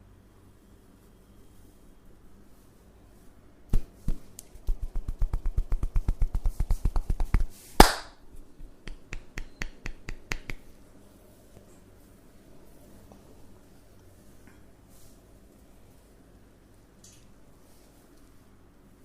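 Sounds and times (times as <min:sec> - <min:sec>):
loud slap: 0:03.7 - 0:08.2
hand tapping percussive massage: 0:03.7 - 0:10.7.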